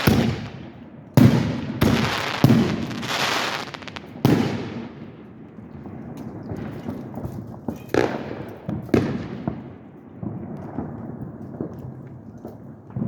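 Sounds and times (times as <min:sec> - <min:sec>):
fireworks crackling: 0:00.0 - 0:05.0
fireworks bangs with rumble: 0:00.0 - 0:05.1.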